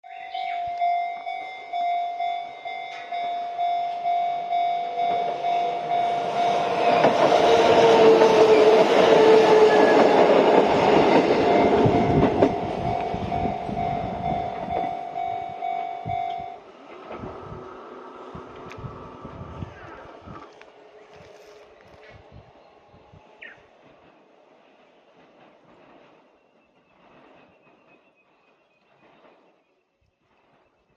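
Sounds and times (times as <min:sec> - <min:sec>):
train passing: 0:00.1 - 0:30.9
level crossing bell ringing: 0:00.3 - 0:07.0, 0:11.3 - 0:16.6
wheels clacking over rail joints: 0:02.5 - 0:18.9.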